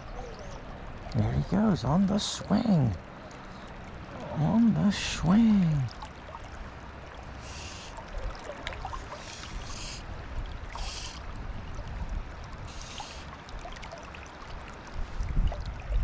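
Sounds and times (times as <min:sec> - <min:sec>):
fast river water running: 0:00.0 - 0:16.0
small water splashes: 0:00.0 - 0:16.0
short hissing bursts: 0:10.8 - 0:11.2.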